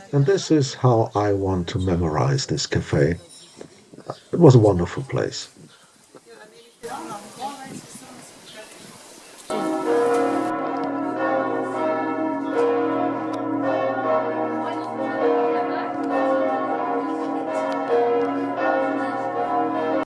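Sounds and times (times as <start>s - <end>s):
church bells pealing: 9.5s - 20.0s.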